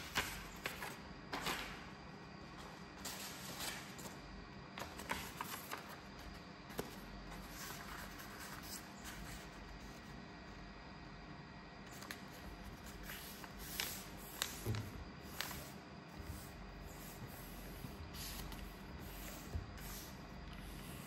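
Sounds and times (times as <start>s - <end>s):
paper rustling and crinkling: 4.8s - 9.6s.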